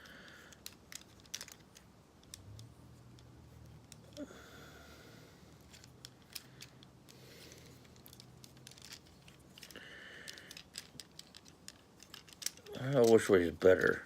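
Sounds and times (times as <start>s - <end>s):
plastic action figure clicks and scrapes: 0.0s - 4.2s, 5.6s - 14.0s.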